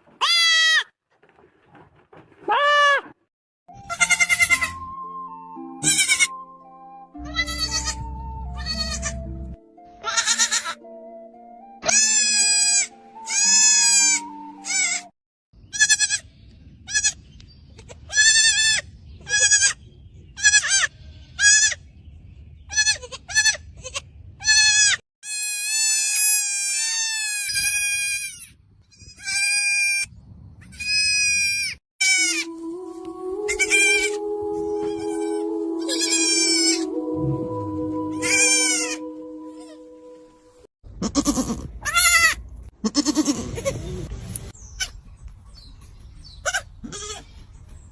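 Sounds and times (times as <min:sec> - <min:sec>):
goat kid bleating: 0:00.2 - 0:00.9, 0:03.8 - 0:04.8, 0:05.8 - 0:06.4, 0:07.2 - 0:08.0, 0:08.6 - 0:09.2, 0:10.0 - 0:10.8, 0:11.8 - 0:15.1, 0:15.7 - 0:16.2, 0:16.9 - 0:17.2, 0:17.8 - 0:19.8, 0:20.4 - 0:21.8, 0:22.7 - 0:30.1, 0:30.7 - 0:36.9, 0:38.2 - 0:39.8, 0:41.0 - 0:44.0, 0:46.4 - 0:47.3
background music: 0:03.7 - 0:15.1, 0:32.2 - 0:40.7.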